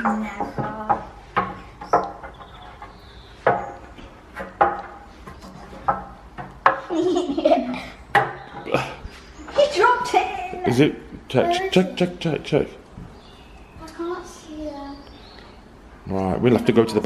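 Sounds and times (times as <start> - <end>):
sharp knocks or clatters: 0.0 - 7.0, 8.1 - 8.7
person giggling: 6.9 - 8.0.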